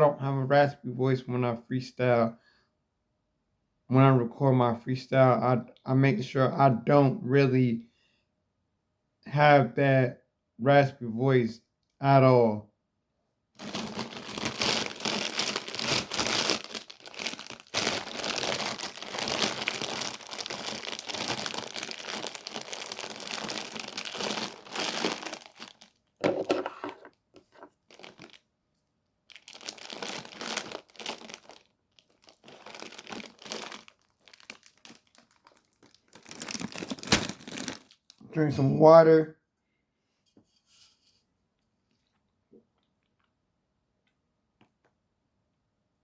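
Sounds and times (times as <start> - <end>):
plastic wrapper crinkling: 13.6 - 26.7, 27.4 - 28.5, 29.3 - 38.2.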